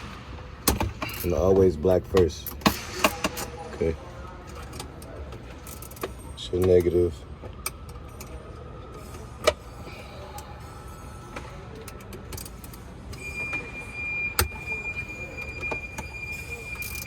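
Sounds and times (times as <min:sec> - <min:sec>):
steady high tone: 0:13.1 - 0:17.0.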